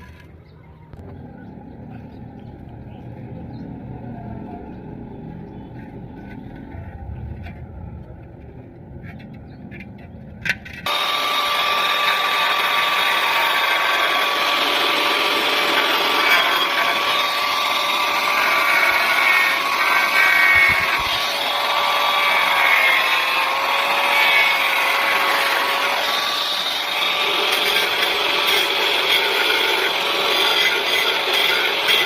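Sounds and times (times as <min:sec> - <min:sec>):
low rumble: 0:00.4 - 0:10.8
power tool whining: 0:10.8 - 0:32.0.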